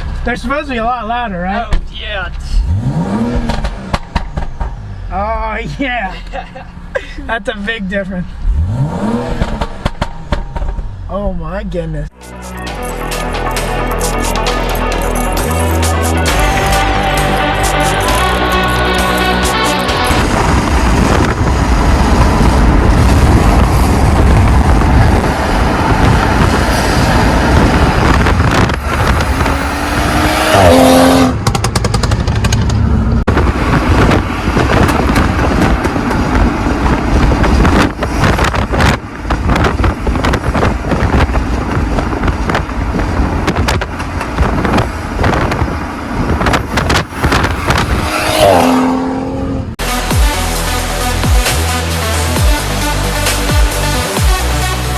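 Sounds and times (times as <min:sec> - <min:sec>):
car engine revving hard: 0:02.6 - 0:04.9, 0:08.4 - 0:10.6, 0:17.7 - 0:52.5
exhaust pops and crackles: 0:03.1 - 0:04.9, 0:09.0 - 0:11.2, 0:20.0 - 0:48.4.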